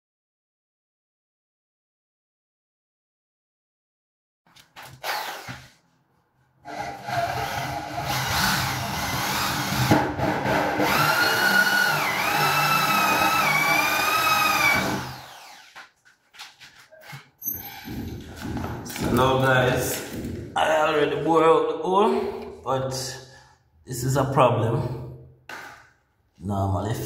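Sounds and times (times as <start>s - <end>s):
power drill boring into wood: 5.0s - 5.6s, 6.7s - 15.8s.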